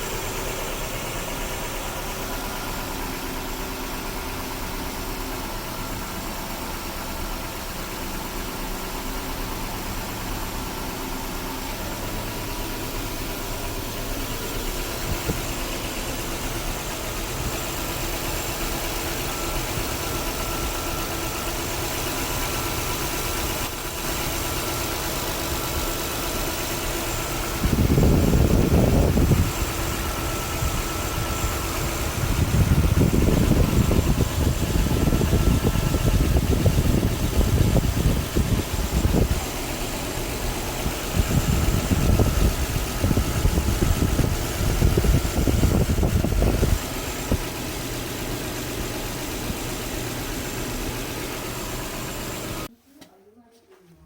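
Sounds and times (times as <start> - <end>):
car engine idling: 0.0 - 52.8
loud low rumble: 27.4 - 50.8.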